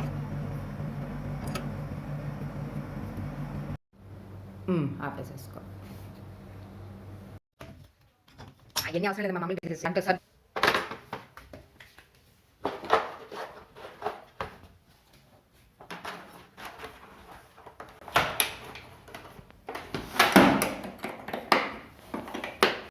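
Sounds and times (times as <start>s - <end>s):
objects knocking and clattering: 15.8s - 22.9s.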